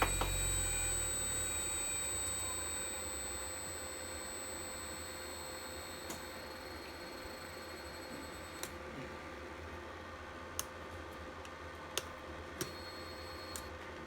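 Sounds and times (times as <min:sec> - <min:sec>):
faint whine: 0:00.0 - 0:09.6
electrical hum: 0:00.0 - 0:10.1.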